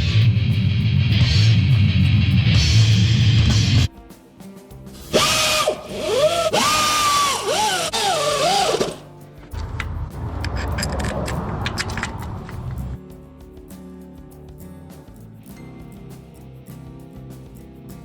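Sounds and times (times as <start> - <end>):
loud background music: 0.0 - 10.9
handheld power drill whirring: 5.1 - 9.1.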